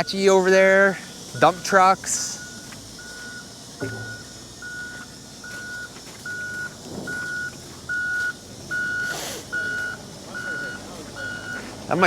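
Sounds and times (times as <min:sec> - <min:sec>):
reversing alarm beeping: 0:00.0 - 0:12.0
short hiss: 0:09.0 - 0:09.6.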